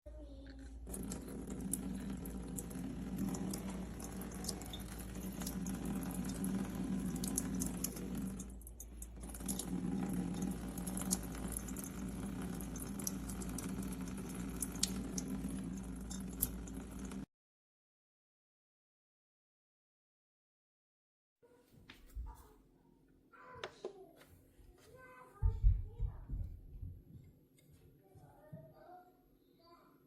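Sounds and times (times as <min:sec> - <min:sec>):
water running and splashing: 0:00.8 - 0:17.3.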